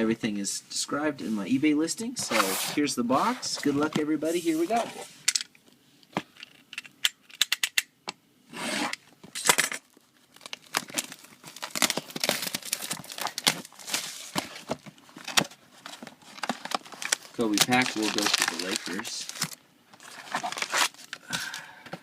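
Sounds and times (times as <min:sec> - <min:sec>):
plastic ripping: 0:09.9 - 0:14.7, 0:15.3 - 0:21.3
plastic wrap crinkling: 0:09.9 - 0:21.3.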